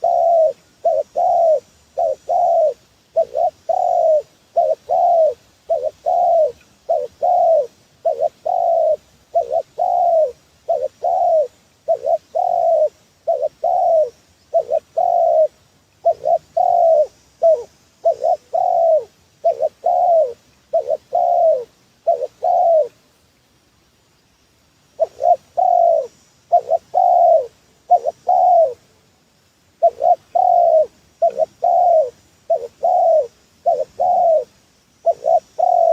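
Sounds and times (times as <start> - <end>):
dove cooing: 0.0 - 23.0, 25.0 - 28.9, 29.8 - 35.9.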